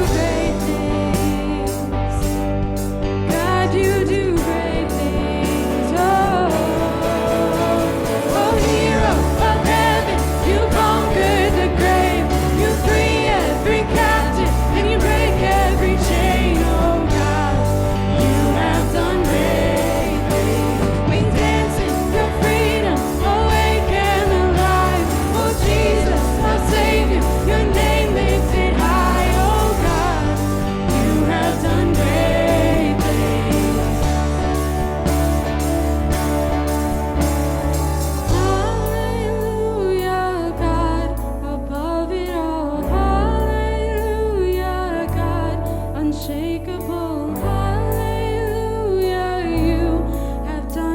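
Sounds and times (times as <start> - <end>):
person singing: 0.0 - 35.6, 37.7 - 50.9
steady drum beat: 0.0 - 38.9
worship band playing: 0.0 - 40.5.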